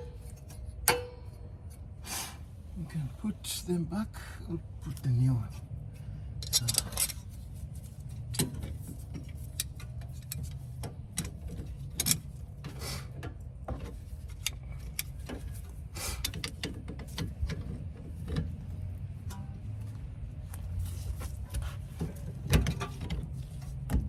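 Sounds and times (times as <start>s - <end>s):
metallic clicks of brake pads fitted: 0.0s - 1.9s, 6.4s - 7.4s, 8.3s - 18.5s
low steady rumble: 0.0s - 24.0s.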